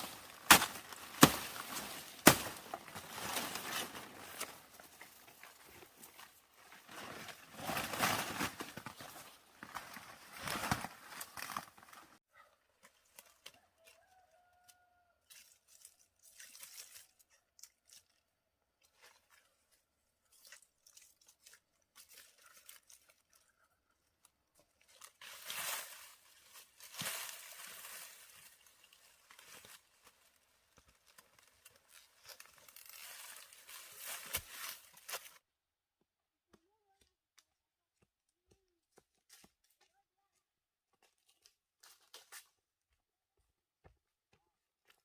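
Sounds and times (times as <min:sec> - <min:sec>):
rustling and tearing: 0:24.8 - 0:35.4.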